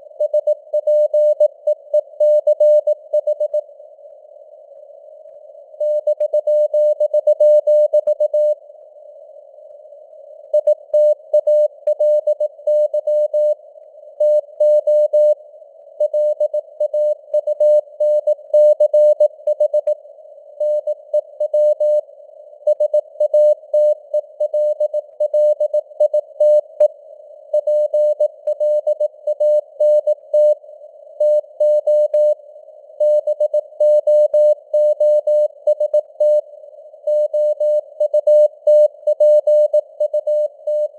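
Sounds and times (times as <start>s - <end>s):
morse code tone beeps: 0.2s - 3.6s, 5.8s - 8.6s, 10.6s - 13.6s, 14.2s - 15.4s, 16.0s - 20.0s, 20.6s - 22.0s, 22.7s - 26.9s, 27.6s - 30.6s, 31.2s - 32.4s, 33.0s - 36.5s, 37.1s - 40.9s
soft radio hiss: 3.0s - 6.6s, 8.4s - 12.6s.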